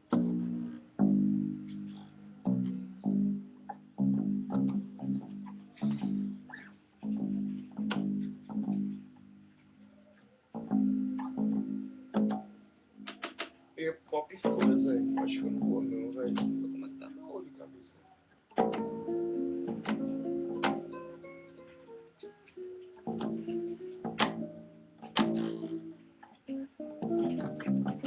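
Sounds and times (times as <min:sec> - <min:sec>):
acoustic bass guitar: 0:00.0 - 0:13.6, 0:14.4 - 0:17.8, 0:18.4 - 0:28.0
acoustic guitar plucking: 0:00.0 - 0:13.7, 0:14.3 - 0:17.8, 0:18.4 - 0:28.0.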